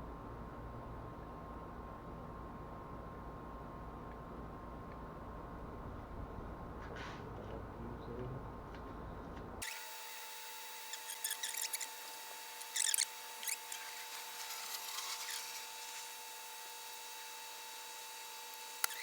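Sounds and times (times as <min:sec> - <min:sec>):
faint steady whine: 0:00.0 - 0:19.0.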